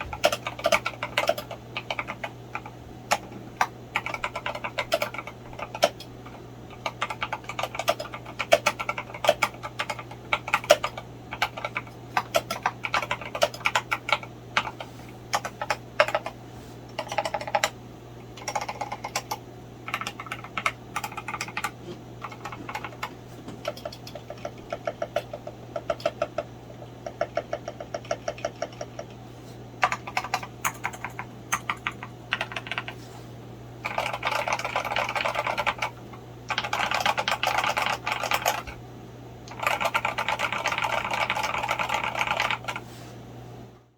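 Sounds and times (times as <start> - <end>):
mechanical keyboard typing: 0.0 - 17.8, 18.4 - 29.2, 29.8 - 33.0, 33.8 - 38.8, 39.5 - 42.8
faint steady hum: 0.0 - 43.9.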